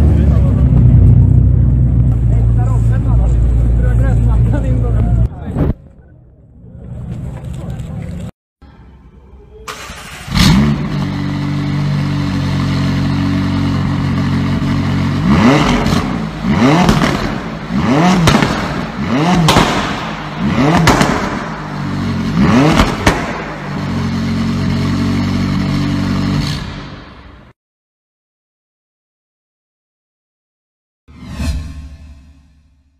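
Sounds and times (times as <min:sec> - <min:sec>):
car engine revving: 0:09.7 - 0:27.3.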